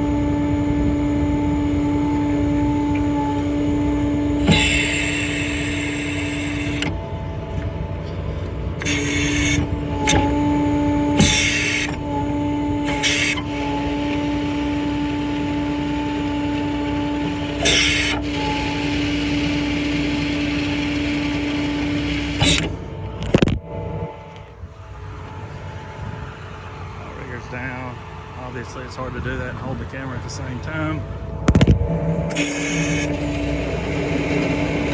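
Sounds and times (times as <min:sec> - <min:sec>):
diesel truck engine running: 0:00.0 - 0:34.9
hydraulic pump whine: 0:00.0 - 0:34.9.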